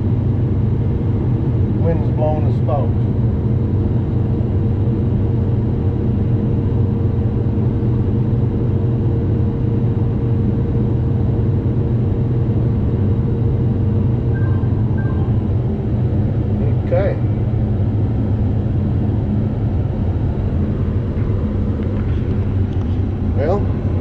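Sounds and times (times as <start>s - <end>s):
combine engine drone: 0.0s - 24.0s
steady hum: 10.4s - 24.0s.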